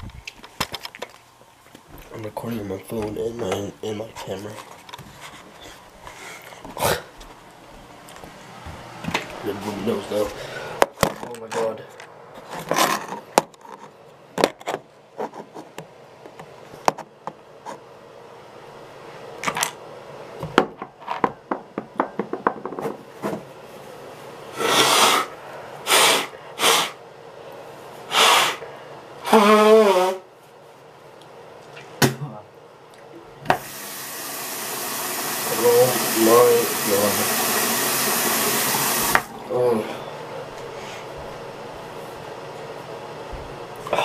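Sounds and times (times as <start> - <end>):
forceful bursts of breath: 24.5 - 27.0, 28.1 - 29.0.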